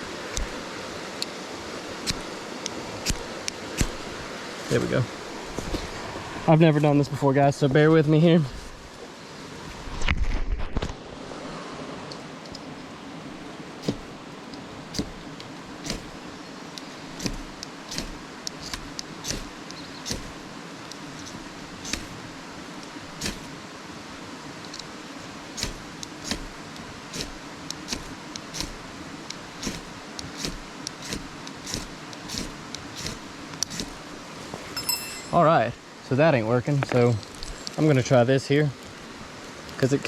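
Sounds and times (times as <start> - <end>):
fire striker scraping: 2.0 - 4.2, 13.8 - 23.6, 25.6 - 35.4.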